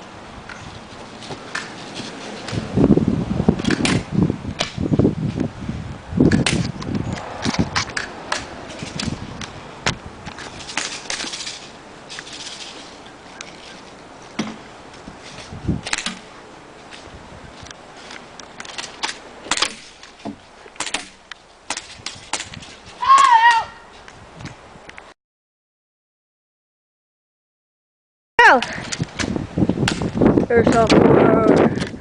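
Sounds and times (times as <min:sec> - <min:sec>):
rustling: 0:00.5 - 0:02.8, 0:07.2 - 0:24.2.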